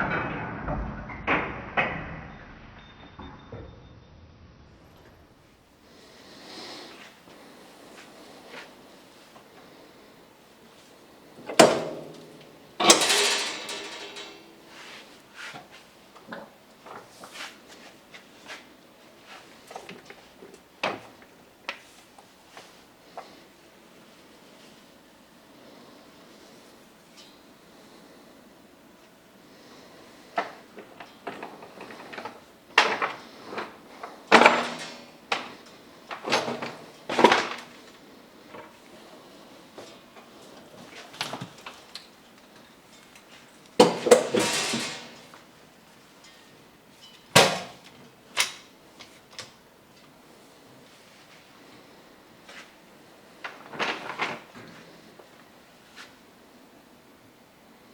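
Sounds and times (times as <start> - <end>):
ringing metal clang: 11.6 - 14.6.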